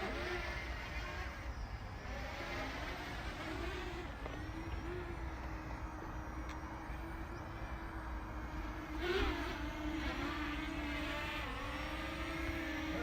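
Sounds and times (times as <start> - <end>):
drone propellers humming: 0.0 - 13.0.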